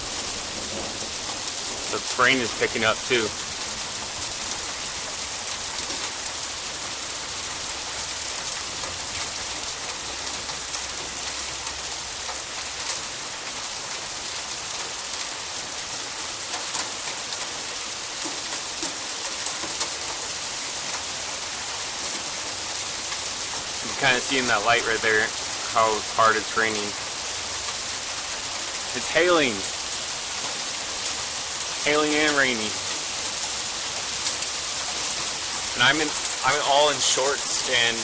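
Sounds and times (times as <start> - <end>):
heavy rain hissing: 0.0 - 38.0
raindrops pattering on surfaces: 0.0 - 38.0.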